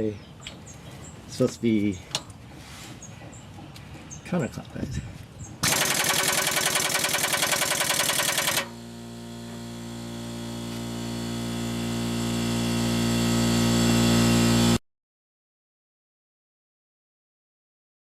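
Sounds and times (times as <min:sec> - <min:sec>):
steady mechanical hum: 0:00.0 - 0:14.8
impact wrench hammering: 0:05.6 - 0:08.8.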